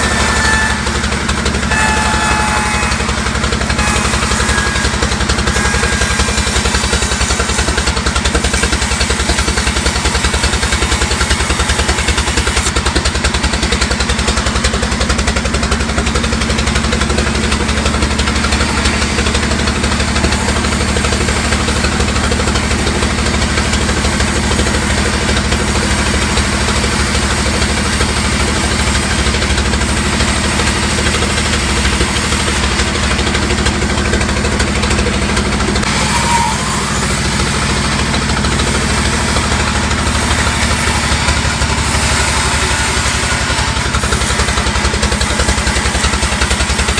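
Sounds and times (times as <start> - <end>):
high whistling tones: 0.0 - 7.5, 35.9 - 41.1
sawmill engine running: 0.0 - 46.9.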